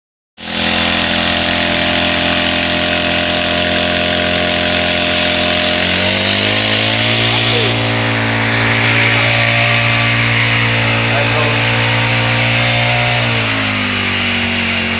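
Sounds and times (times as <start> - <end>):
brush cutter engine revving: 0.4 - 14.9.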